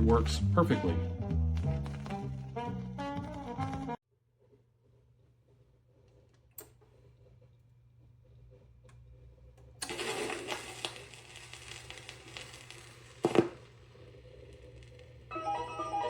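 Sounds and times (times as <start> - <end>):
turntable handling crackle and rustle: 9.8 - 15.3.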